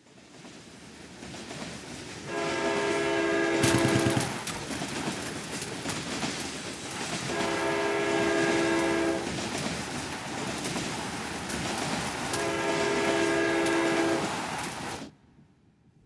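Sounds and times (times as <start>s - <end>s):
train wheels rumbling on rails: 0.0s - 15.2s
train horn blasts: 2.3s - 4.4s, 7.3s - 9.3s, 12.3s - 14.4s.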